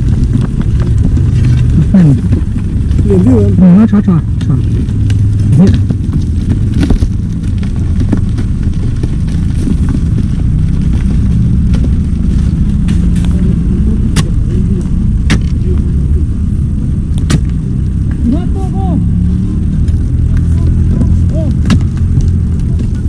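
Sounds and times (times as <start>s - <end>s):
diesel machinery droning: 0.0s - 23.0s
sharp knocks: 15.2s - 15.6s, 17.2s - 17.6s, 21.0s - 22.2s.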